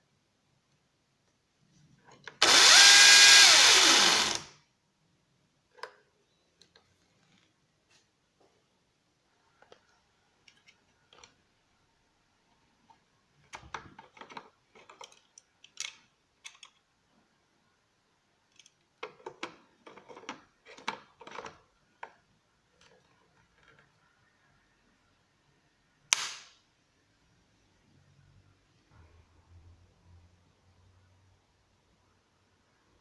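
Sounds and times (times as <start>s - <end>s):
plastic and metal parts clicking: 13.4s - 16.9s.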